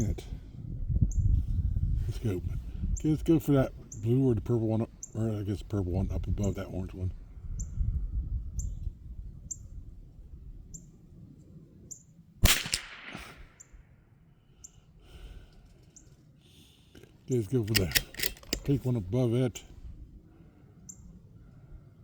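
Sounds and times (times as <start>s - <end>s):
rifle shot with echo: 12.4s - 13.6s.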